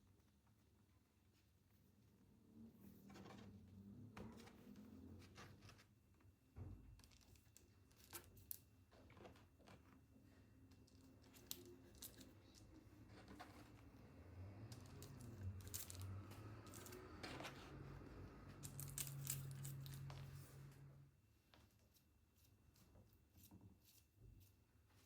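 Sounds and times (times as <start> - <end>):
utensil clicks and rustles: 10.7 - 13.8, 14.6 - 17.8, 18.4 - 20.3.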